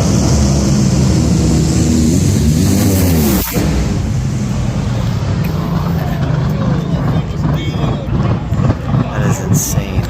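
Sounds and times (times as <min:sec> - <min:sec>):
dragster engines roaring past: 0:00.0 - 0:10.0.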